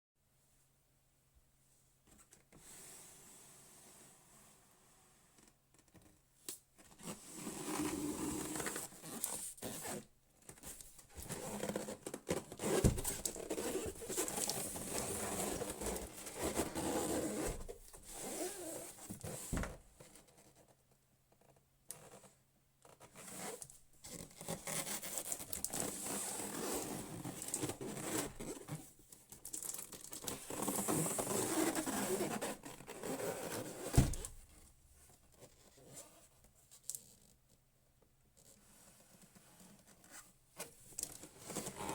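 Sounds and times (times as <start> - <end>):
packaging tearing and rustling: 12.3 - 15.9.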